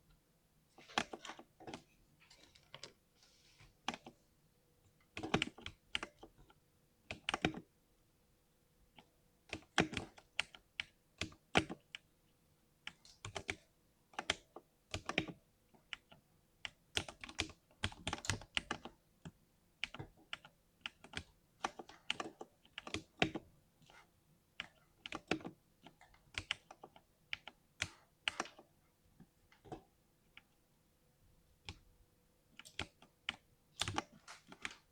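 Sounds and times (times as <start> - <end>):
mechanical keyboard typing: 5.1 - 6.4, 7.1 - 7.7, 9.5 - 12.0, 12.9 - 13.6, 14.2 - 24.0, 24.6 - 28.7, 32.6 - 34.9.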